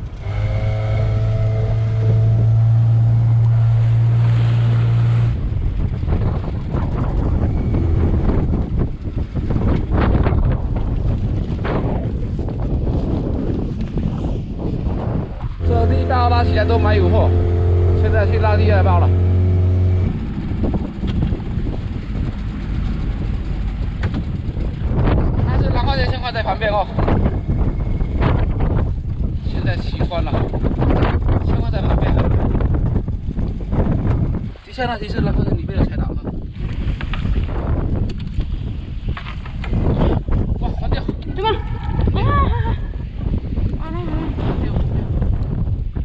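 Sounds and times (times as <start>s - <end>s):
boat engine humming: 0.0s - 11.2s, 15.4s - 34.8s
waves: 0.0s - 13.2s, 13.8s - 32.6s, 34.4s - 45.2s
wind buffeting microphone: 0.0s - 46.0s.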